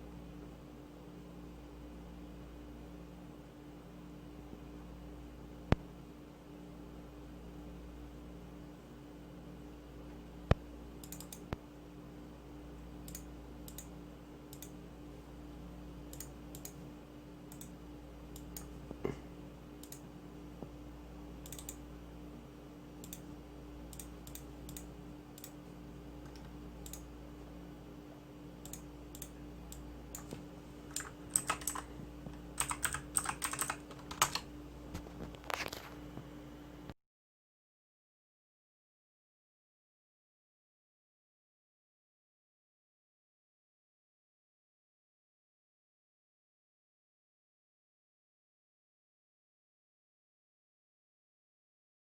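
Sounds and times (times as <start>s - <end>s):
steady low hum: 0.0s - 37.0s
keyboard typing: 11.0s - 11.4s, 21.4s - 21.8s, 28.6s - 35.8s.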